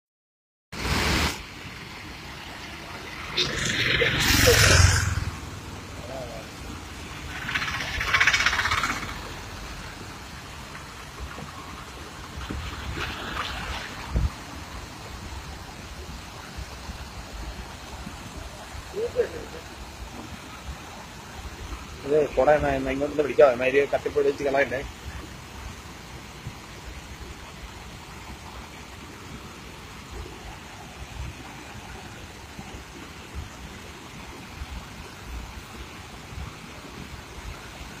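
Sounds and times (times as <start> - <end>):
rushing water: 0.8 - 38.0
low rumbles: 3.0 - 11.3.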